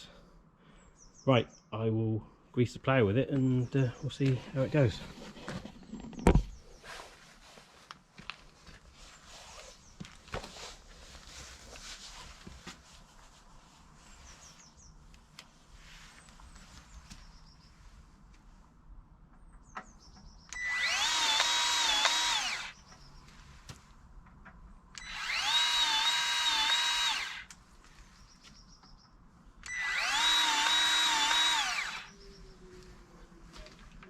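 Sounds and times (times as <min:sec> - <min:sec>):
cordless grease gun motor: 0:20.5 - 0:22.8, 0:25.0 - 0:27.5, 0:29.6 - 0:32.2.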